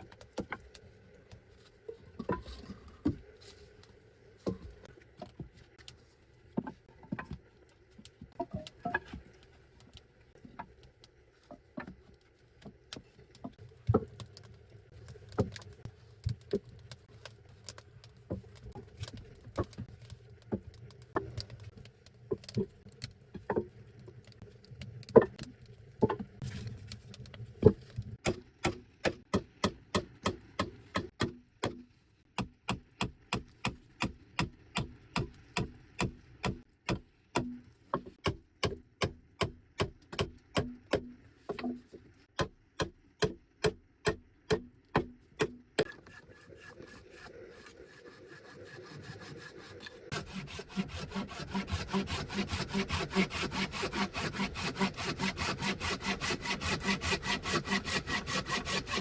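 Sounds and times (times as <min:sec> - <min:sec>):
hand saw cutting wood: 0:45.4 - 0:59.0.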